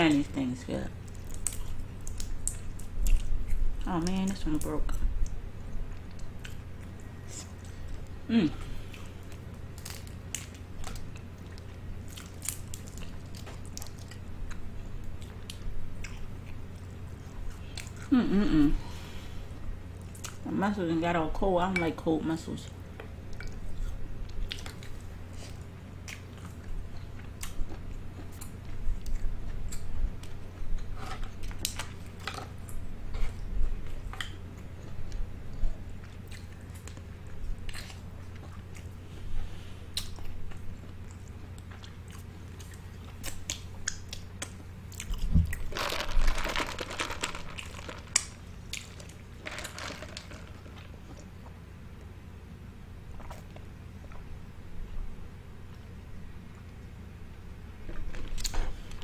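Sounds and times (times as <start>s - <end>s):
chewing and biting food: 4.9s - 18.1s, 23.0s - 39.0s, 39.9s - 51.6s.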